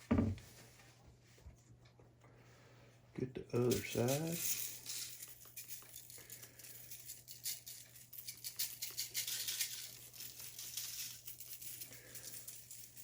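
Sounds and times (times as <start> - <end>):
spice shaker shaking: 4.1 - 13.0.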